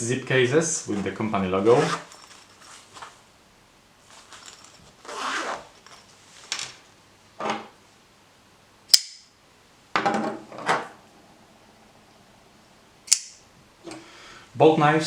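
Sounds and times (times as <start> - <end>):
zip case rustling: 0.9 - 3.2, 4.1 - 6.5.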